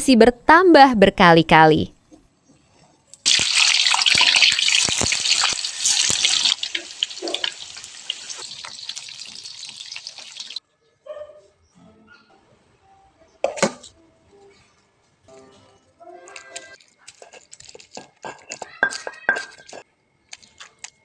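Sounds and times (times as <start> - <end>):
water running from tap: 3.3 - 10.6.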